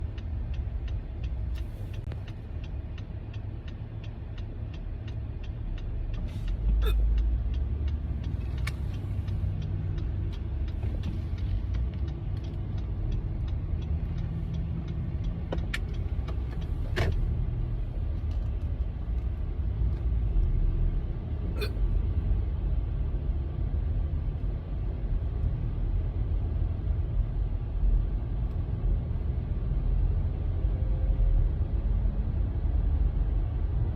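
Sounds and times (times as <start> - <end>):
person hiccupping: 6.8 - 7.2, 21.6 - 21.8.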